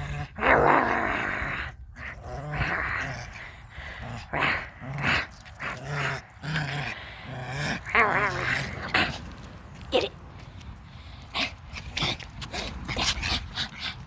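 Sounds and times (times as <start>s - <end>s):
puppy play-growling: 0.0s - 9.5s.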